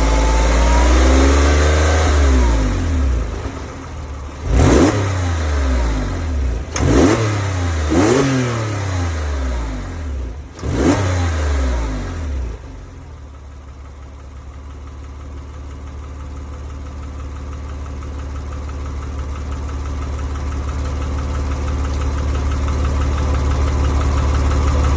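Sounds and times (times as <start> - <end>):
car engine revving: 0.0 - 13.0
car engine idling: 0.0 - 24.9.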